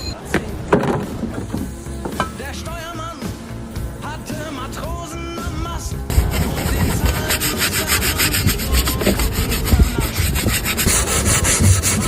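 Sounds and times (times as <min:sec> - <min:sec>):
rapid scraping strokes: 0:06.1 - 0:12.0.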